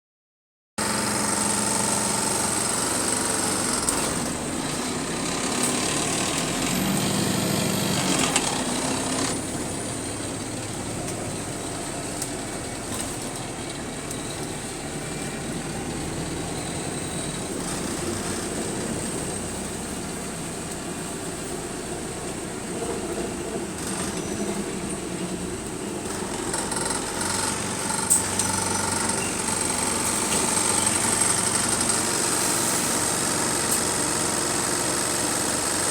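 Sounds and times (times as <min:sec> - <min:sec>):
bus engine running: 0:00.8 - 0:35.9.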